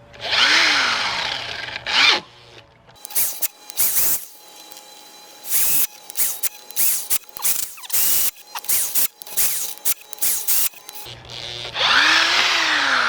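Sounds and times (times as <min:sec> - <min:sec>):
power drill boring into wood: 0:03.0 - 0:11.1.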